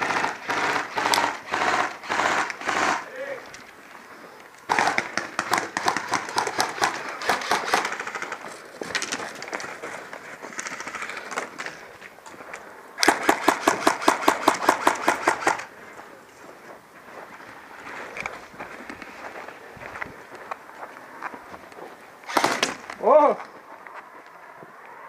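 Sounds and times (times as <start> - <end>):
airsoft gun full-auto bursts: 0.0 - 3.1, 4.7 - 8.4, 13.0 - 15.7, 22.3 - 22.8.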